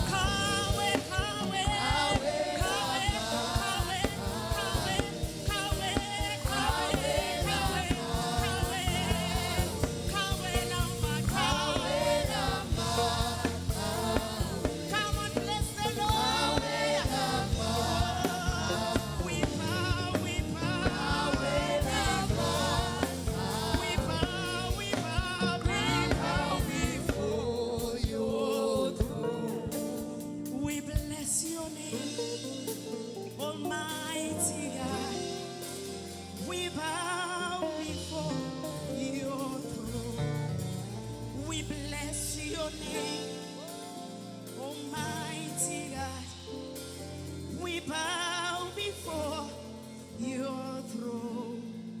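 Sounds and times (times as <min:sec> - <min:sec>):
voices singing: 0:00.0 - 0:30.3
band with drums and bass: 0:00.0 - 0:52.0.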